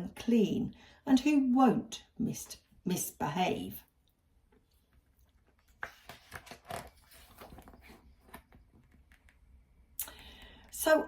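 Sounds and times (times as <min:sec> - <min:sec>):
book pages turning: 0:05.0 - 0:09.4.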